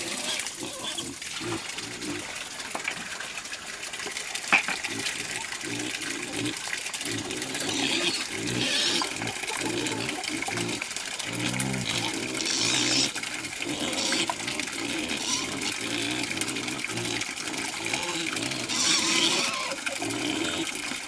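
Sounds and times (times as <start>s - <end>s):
pigs grunting: 0.0s - 2.4s, 4.6s - 21.0s
water running or splashing: 0.0s - 21.0s.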